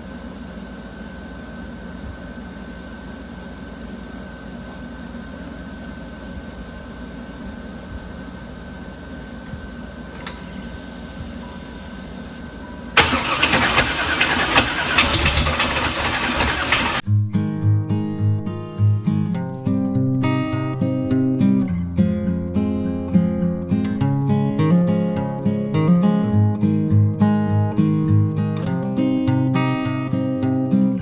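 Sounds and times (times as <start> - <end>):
engine hum with faint whine: 0.0 - 17.0
engine rough clattering knocks: 13.0 - 17.0.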